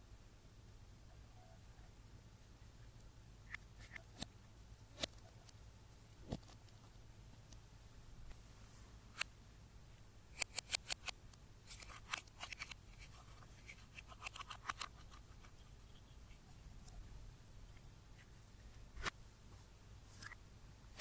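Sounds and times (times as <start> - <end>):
faint steady hum: 0.0 - 21.0
sharp clicks and snips: 3.0 - 5.6, 9.1 - 9.3, 10.3 - 17.0.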